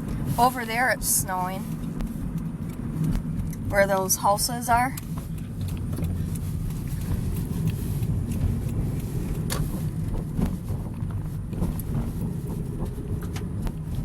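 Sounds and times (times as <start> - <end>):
car driving rumble: 0.0 - 14.0
faint ticks and clicks: 1.6 - 10.2.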